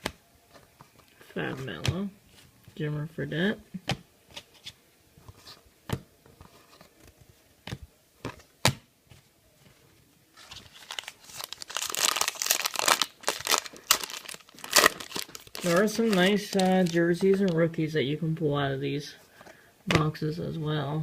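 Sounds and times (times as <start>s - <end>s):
wrapper crinkling and tearing: 10.4s - 17.6s.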